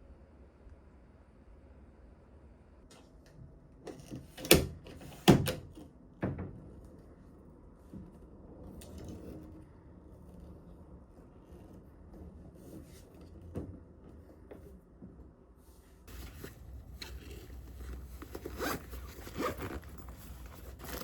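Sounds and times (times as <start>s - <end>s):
faint rustling: 15.7s - 21.0s.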